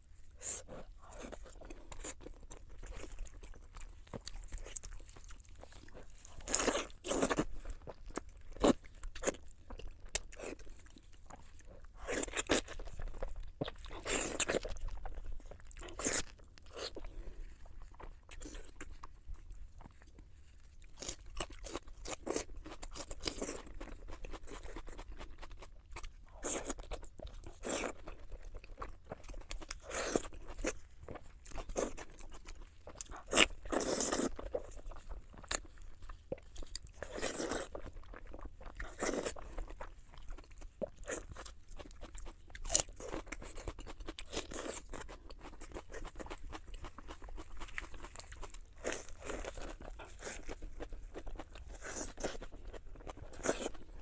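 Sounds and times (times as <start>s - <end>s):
food being crunched and chewed: 0.3s - 54.0s.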